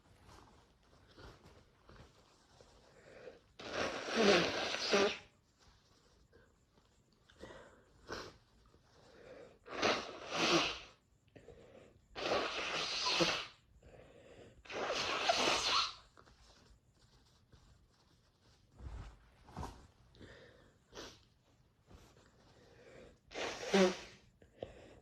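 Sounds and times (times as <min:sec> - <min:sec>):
person blowing nose: 0:03.5 - 0:05.4, 0:09.6 - 0:11.0, 0:12.2 - 0:13.7, 0:14.6 - 0:16.2, 0:23.2 - 0:24.3.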